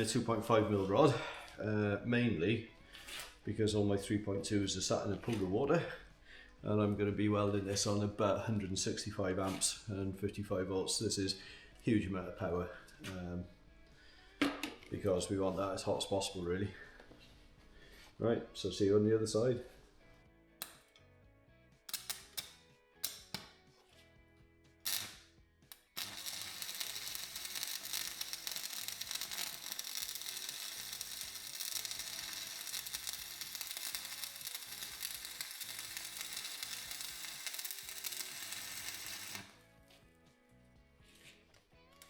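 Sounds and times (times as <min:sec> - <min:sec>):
welding arc crackling: 0:24.8 - 0:39.6.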